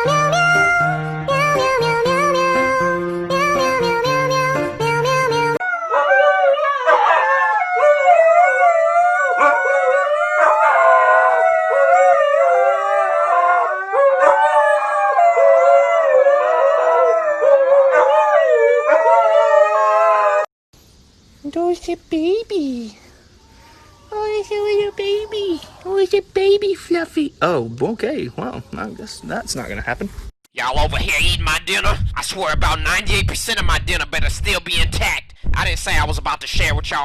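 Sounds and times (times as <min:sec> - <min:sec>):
music: 0:00.0 - 0:05.6
dogs howling: 0:05.6 - 0:20.5, 0:23.4 - 0:25.9, 0:28.3 - 0:29.8.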